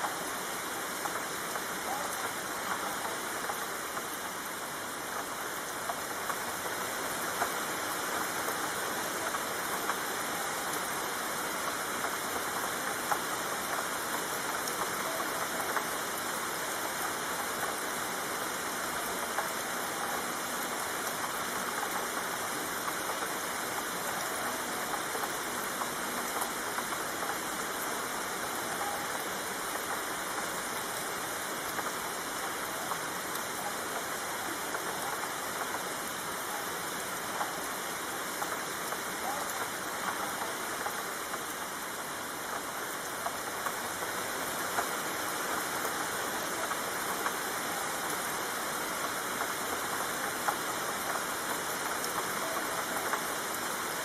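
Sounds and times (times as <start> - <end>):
raindrops ticking close by: 0.0 - 54.0
steady rain hiss: 0.0 - 54.0.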